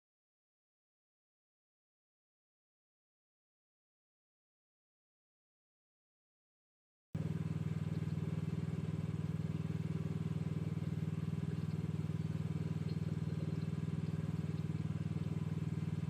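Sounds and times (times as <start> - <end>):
excavator engine running: 7.2 - 16.0.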